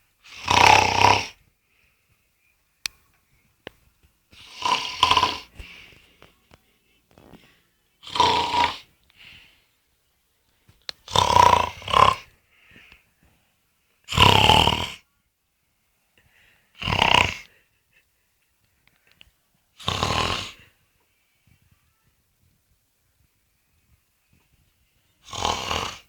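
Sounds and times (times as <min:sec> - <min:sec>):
loud snoring: 0:00.3 - 0:01.4, 0:04.4 - 0:05.8, 0:08.0 - 0:08.9, 0:11.0 - 0:12.3, 0:14.1 - 0:15.0, 0:16.8 - 0:17.6, 0:19.8 - 0:20.7, 0:25.2 - 0:26.0
faint breathing: 0:01.4 - 0:02.6, 0:04.3 - 0:07.9, 0:08.8 - 0:09.9, 0:12.3 - 0:13.6, 0:16.1 - 0:16.8.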